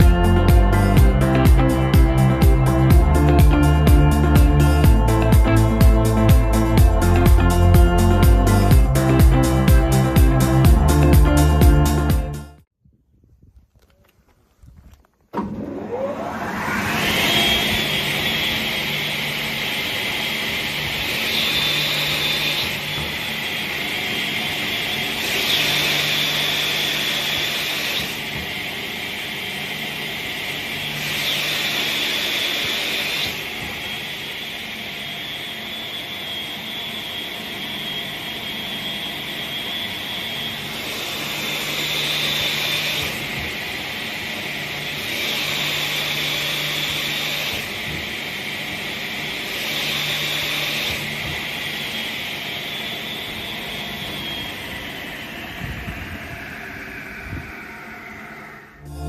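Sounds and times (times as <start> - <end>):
saw blade whining: 15.4 - 59.0
saw cutting through workpiece: 15.4 - 59.0.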